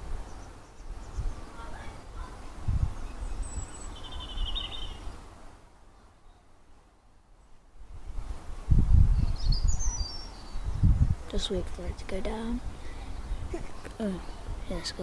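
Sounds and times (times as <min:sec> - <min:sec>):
birds chirping and trilling: 0:00.0 - 0:05.3, 0:09.2 - 0:15.0
low wind rumble: 0:00.0 - 0:06.0, 0:06.6 - 0:15.0.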